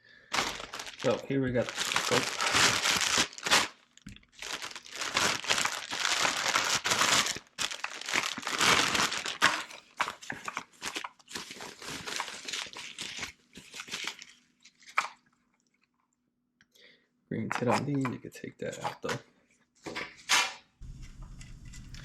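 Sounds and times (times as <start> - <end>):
plastic packaging crinkling: 0.3 - 15.4.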